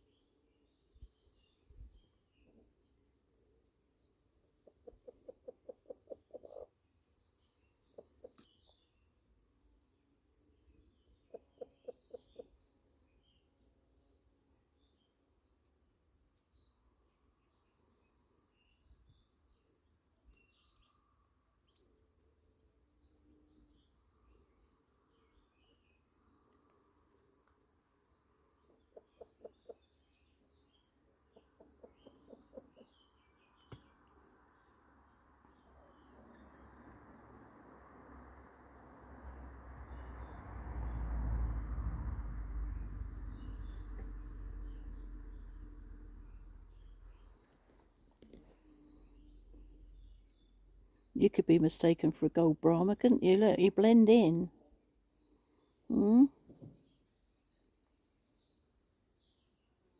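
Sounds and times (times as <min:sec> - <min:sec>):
small birds chirping: 0:00.0 - 0:09.8, 0:10.5 - 0:15.6, 0:16.4 - 0:36.8, 0:38.4 - 0:59.9
hen clucking softly: 0:04.6 - 0:06.8, 0:07.9 - 0:08.5, 0:11.2 - 0:12.6, 0:28.8 - 0:29.9, 0:31.3 - 0:33.0.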